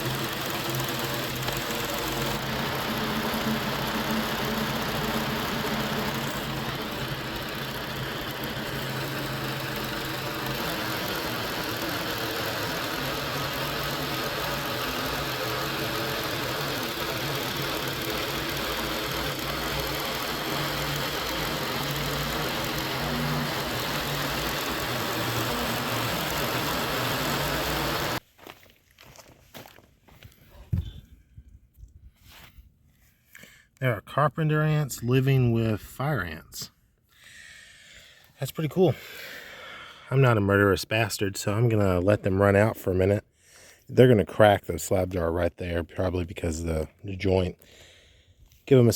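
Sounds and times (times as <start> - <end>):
gasoline engine running: 0.0 - 28.2.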